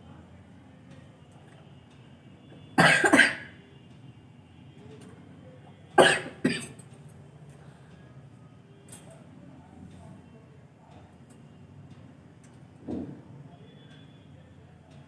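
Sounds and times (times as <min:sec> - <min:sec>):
woman coughing: 0:02.8 - 0:03.5, 0:06.0 - 0:06.7.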